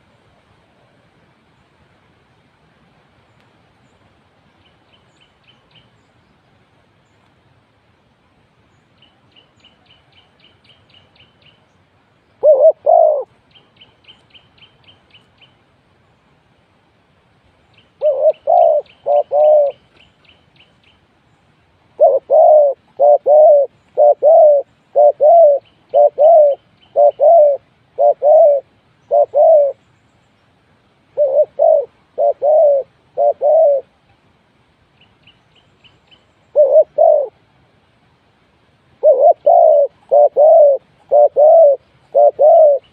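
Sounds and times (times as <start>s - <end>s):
dove cooing: 12.4s - 13.3s, 18.0s - 19.8s, 22.0s - 29.8s, 31.1s - 34.0s, 36.5s - 37.4s, 39.0s - 42.9s.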